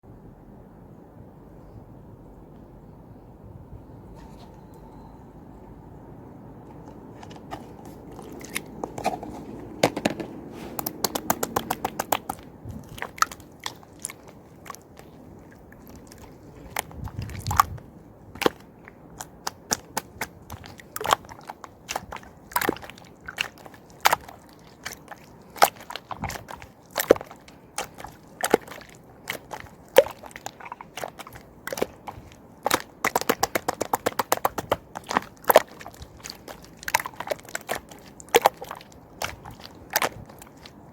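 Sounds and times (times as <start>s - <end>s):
slime popping and clicking: 10.8s - 14.2s, 25.6s - 40.3s.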